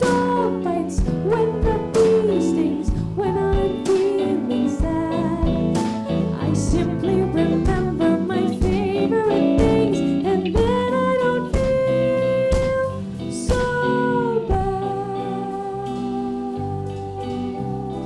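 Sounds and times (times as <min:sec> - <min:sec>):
bass: 0:00.0 - 0:18.0
guitar melody: 0:00.0 - 0:18.0
jazz combo playing: 0:00.0 - 0:18.0
steady drum beat: 0:01.0 - 0:13.8.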